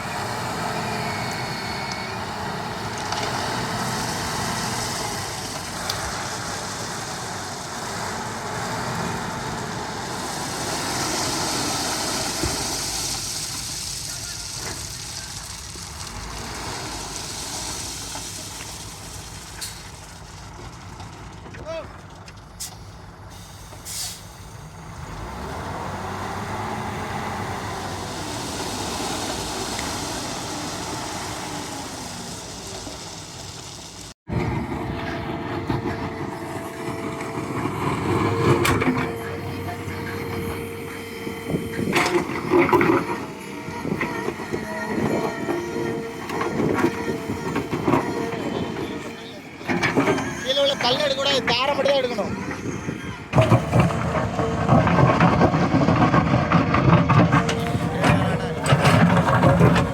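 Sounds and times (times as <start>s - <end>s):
diesel engine running: 0.0s - 59.9s
clattering: 52.6s - 59.9s.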